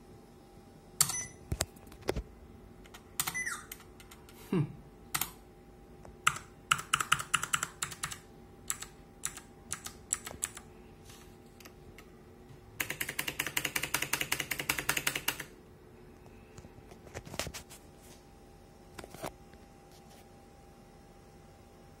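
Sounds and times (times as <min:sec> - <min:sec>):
clicky mechanical keyboard typing: 0:02.8 - 0:04.4, 0:05.1 - 0:05.4, 0:06.2 - 0:10.7, 0:12.8 - 0:15.5.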